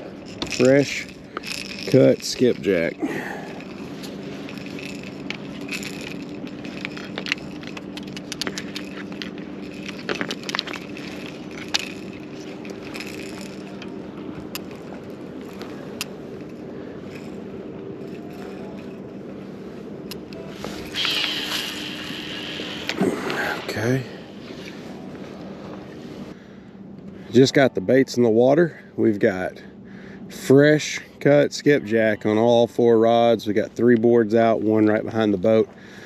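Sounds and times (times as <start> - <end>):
fishing gear clicking and rattling: 0.0 - 26.3
electric trolling motor humming: 0.0 - 28.2.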